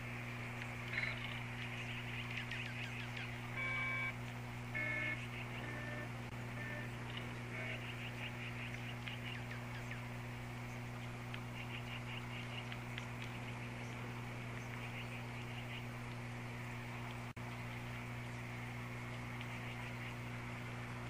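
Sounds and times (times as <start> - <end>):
steady low hum: 0.0 - 21.0
small birds chirping: 0.4 - 4.2, 4.8 - 20.6
brief steady tones: 3.5 - 7.9.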